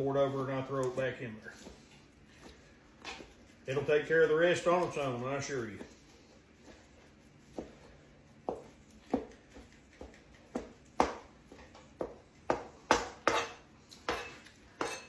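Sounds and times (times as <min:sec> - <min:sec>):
knife chopping on cutting board: 0:07.5 - 0:15.0.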